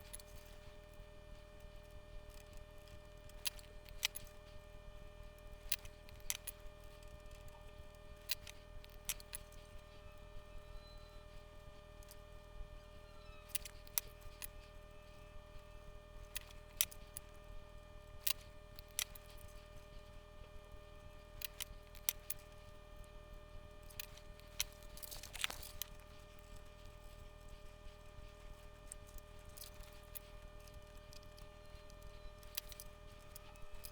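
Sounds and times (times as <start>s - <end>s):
faint electrical hum: 0.0s - 33.9s
tools clicking on circuit board: 2.3s - 4.5s, 5.5s - 9.6s, 13.4s - 14.8s, 18.2s - 19.8s, 21.4s - 22.7s, 23.8s - 33.9s.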